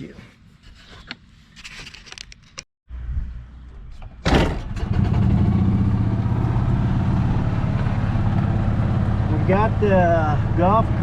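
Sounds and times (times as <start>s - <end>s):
golf cart engine starting and running: 4.3s - 11.0s.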